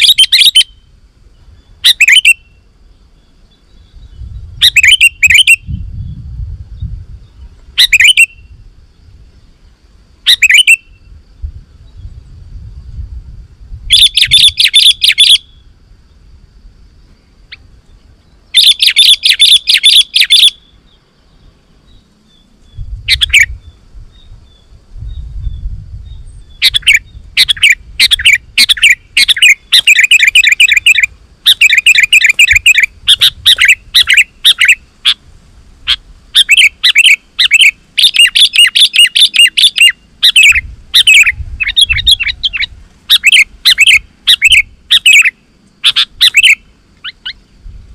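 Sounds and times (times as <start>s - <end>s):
bulbul chattering calls: 0.0s - 0.8s, 1.7s - 2.6s, 3.4s - 5.8s, 7.3s - 8.5s, 10.2s - 11.0s, 13.9s - 15.6s, 18.5s - 21.0s, 21.8s - 24.7s, 26.1s - 35.2s, 35.8s - 47.5s.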